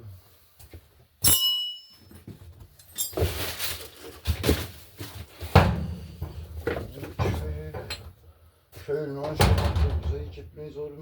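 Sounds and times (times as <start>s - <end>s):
sharp metallic clank: 1.2s - 2.1s
metal tools clattering: 1.2s - 4.1s.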